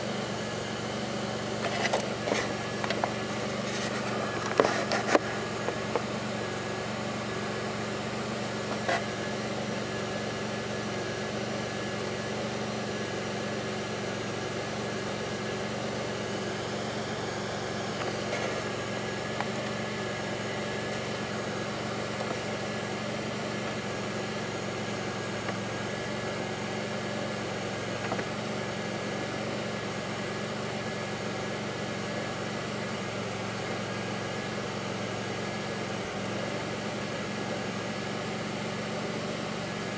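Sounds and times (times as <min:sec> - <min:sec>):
car engine idling: 0:00.0 - 0:39.9
faint engine knocks: 0:01.6 - 0:06.2.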